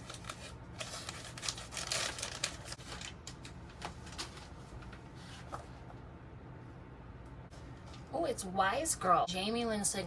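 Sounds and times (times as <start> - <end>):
package tearing and rustling: 0.0 - 4.5.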